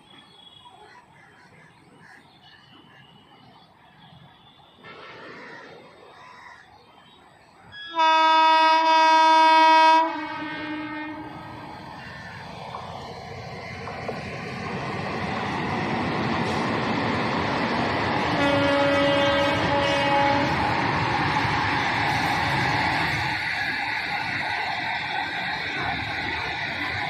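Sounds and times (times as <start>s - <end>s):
train approaching: 0.0s - 27.0s
locomotive horn blast: 7.8s - 11.6s, 18.2s - 20.7s.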